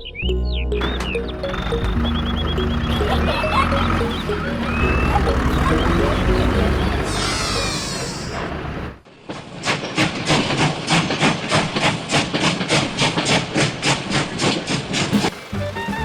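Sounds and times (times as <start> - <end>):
steam train chugging: 0.8 - 9.0.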